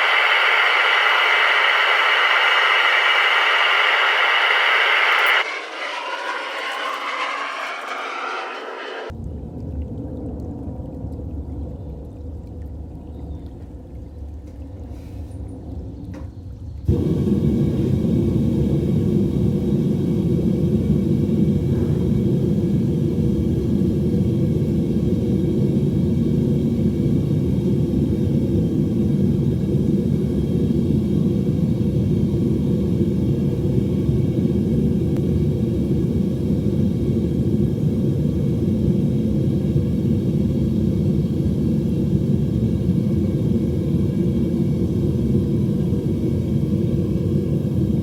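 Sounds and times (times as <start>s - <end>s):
furnace rumbling: 0.0s - 9.1s, 16.9s - 44.1s.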